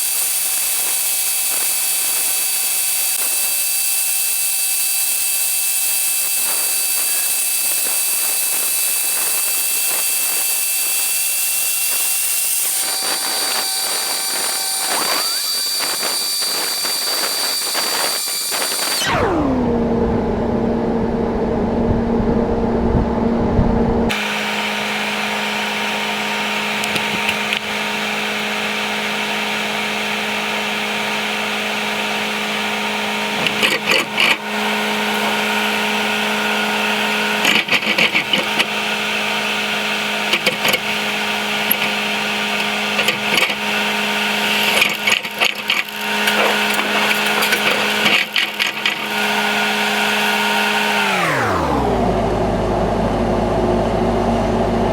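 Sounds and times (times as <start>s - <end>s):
combine harvester running: 0.0s - 19.0s, 19.7s - 51.2s, 51.8s - 54.9s
rattling: 33.3s - 36.1s, 40.1s - 49.6s.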